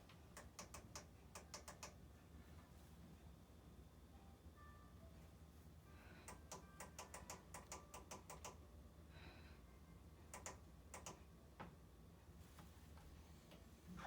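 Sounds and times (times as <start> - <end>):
quick light clicks: 0.3 - 2.0.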